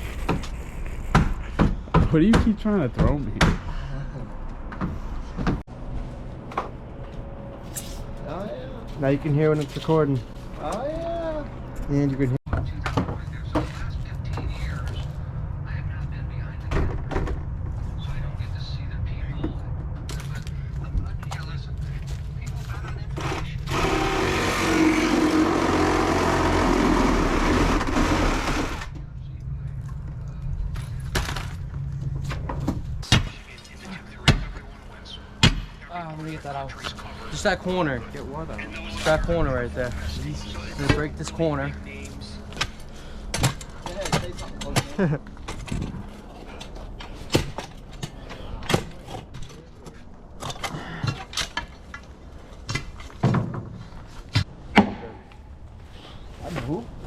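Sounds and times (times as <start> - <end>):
power tool motor running: 23.2 - 28.9.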